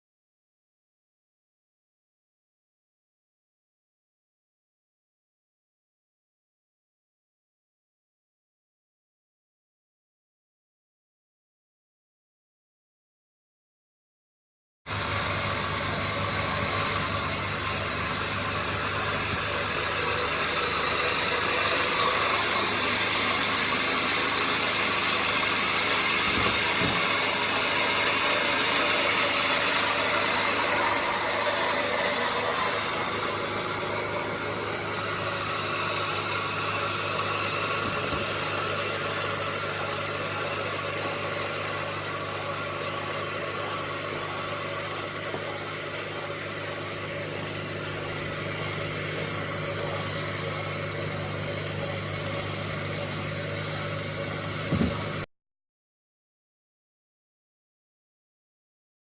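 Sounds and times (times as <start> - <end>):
truck engine running: 14.9 - 55.3.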